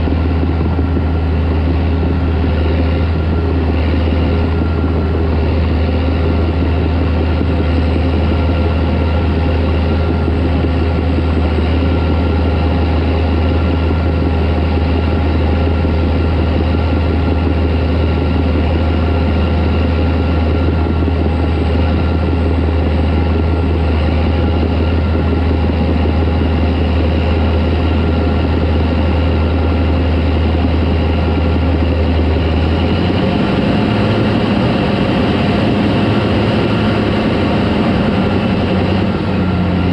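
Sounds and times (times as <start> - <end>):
diesel tractor engine droning: 0.0 - 39.9.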